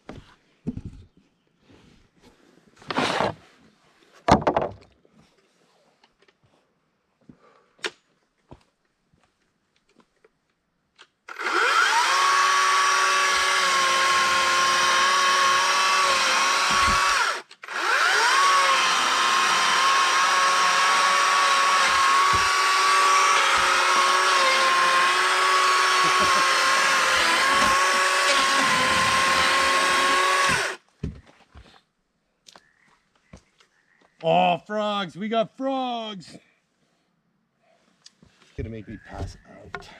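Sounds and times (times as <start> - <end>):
small electric motor whining: 11.3 - 30.8.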